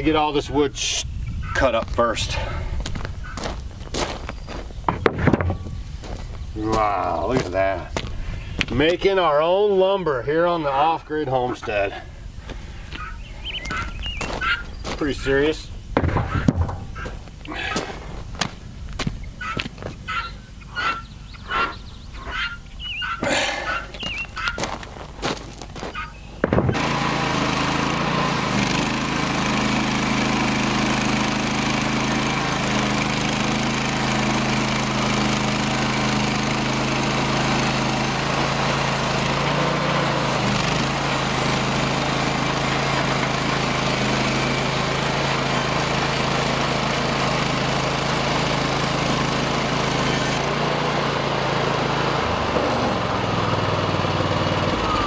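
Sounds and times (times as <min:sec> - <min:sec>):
sawmill engine running: 0:00.0 - 0:55.0
saw blade cutting log: 0:13.7 - 0:18.0, 0:26.4 - 0:55.0.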